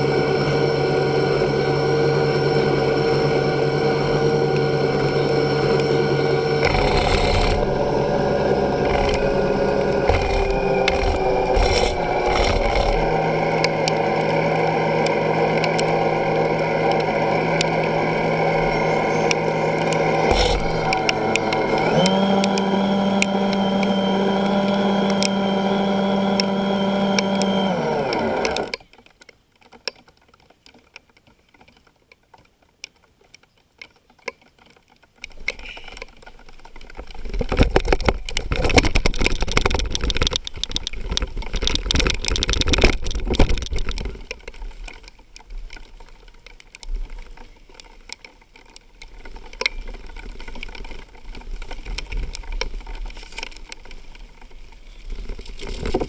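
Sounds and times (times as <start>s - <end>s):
motor humming: 0.0s - 28.8s
second motor-like sound: 0.0s - 28.8s
clicks: 4.5s - 49.8s.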